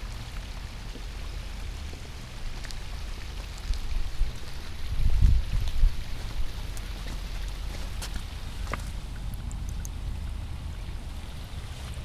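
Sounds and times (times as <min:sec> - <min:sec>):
water pouring and splashing: 0:00.0 - 0:12.0
water dripping: 0:05.6 - 0:11.4.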